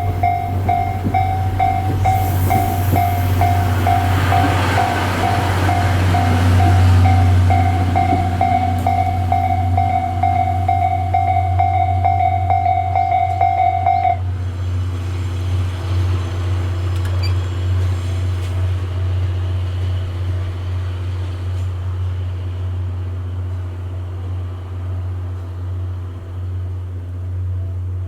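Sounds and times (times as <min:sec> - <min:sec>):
vehicle engine droning: 0:00.0 - 0:20.6.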